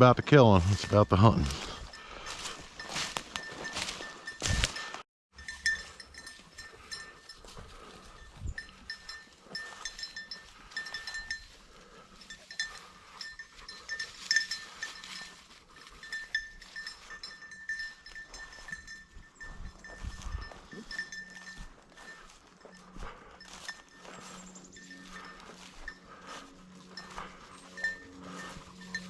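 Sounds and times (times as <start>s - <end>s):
small bell jingling: 0.5s - 29.0s
light footsteps: 0.6s - 5.0s, 16.8s - 29.0s
rustling in brush: 1.6s - 5.0s, 19.8s - 29.0s.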